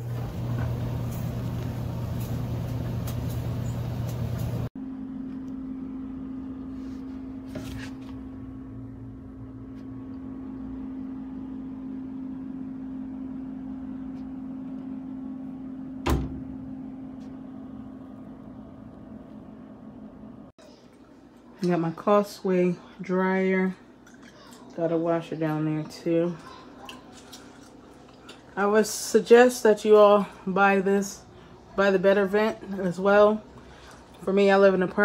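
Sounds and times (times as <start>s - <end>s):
tumble dryer motor hum: 0.0s - 20.5s.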